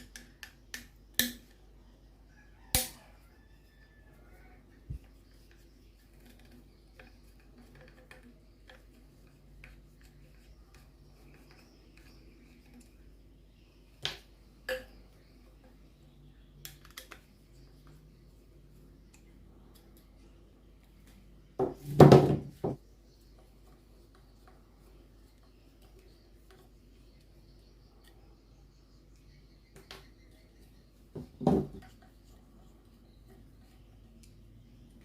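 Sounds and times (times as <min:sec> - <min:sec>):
plastic parts clicking and tapping: 0:00.0 - 0:01.6, 0:04.9 - 0:13.1.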